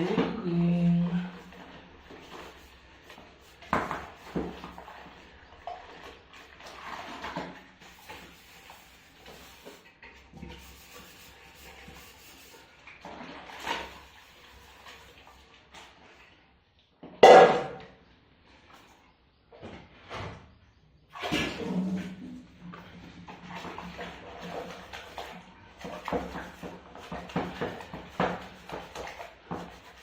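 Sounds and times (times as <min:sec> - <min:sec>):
dishes clinking while washed: 0:17.2 - 0:17.9.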